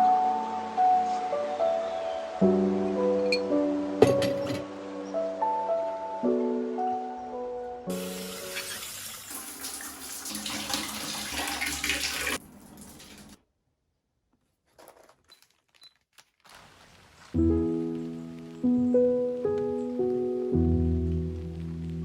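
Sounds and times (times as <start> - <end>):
tap water running into sink: 7.9 - 13.4.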